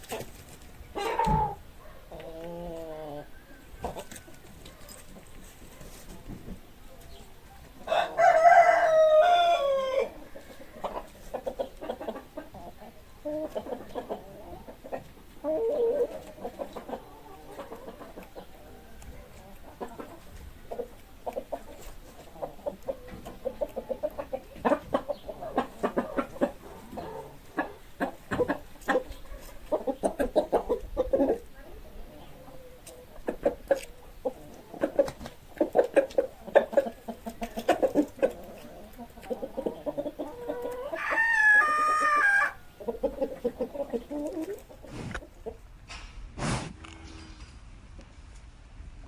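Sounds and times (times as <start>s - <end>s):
chickens clucking: 0.0s - 46.3s
rooster crowing: 7.9s - 10.2s, 40.9s - 42.7s.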